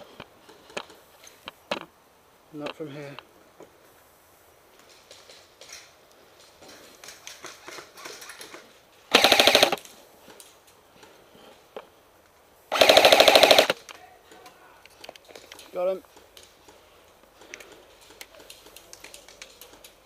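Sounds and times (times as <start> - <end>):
airsoft rifle full-auto bursts: 9.1 - 9.8, 12.7 - 13.8.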